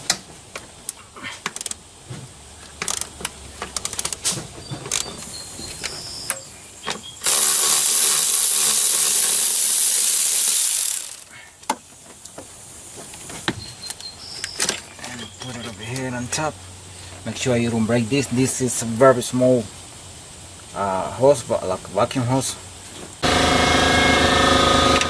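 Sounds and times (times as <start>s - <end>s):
ratchet wrench clicking: 1.5s - 1.8s, 2.8s - 3.1s, 3.8s - 4.2s, 7.2s - 11.3s
gas hissing: 3.8s - 11.3s.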